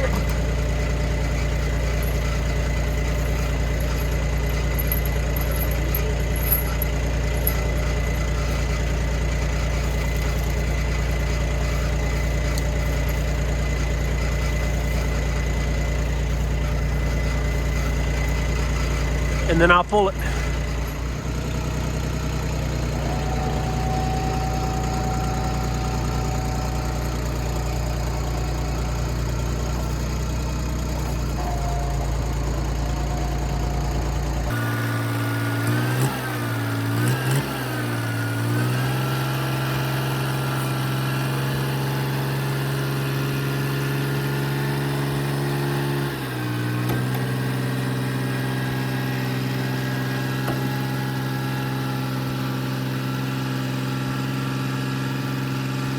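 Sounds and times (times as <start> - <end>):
engine running under load: 0.0 - 55.9.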